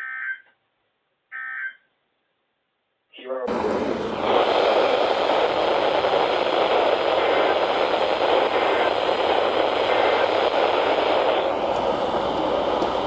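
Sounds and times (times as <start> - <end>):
radio static hiss: 3.5 - 13.0.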